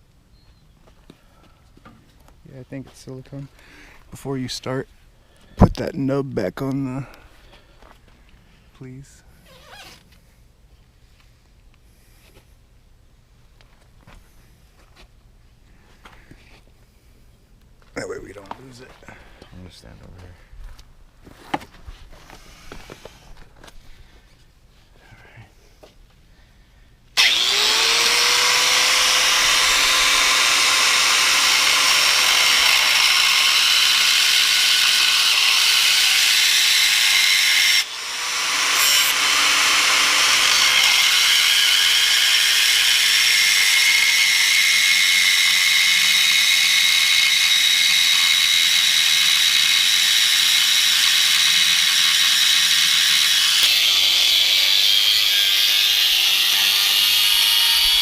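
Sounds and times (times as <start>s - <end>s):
angle grinder grinding steel: 27.2s - 58.0s.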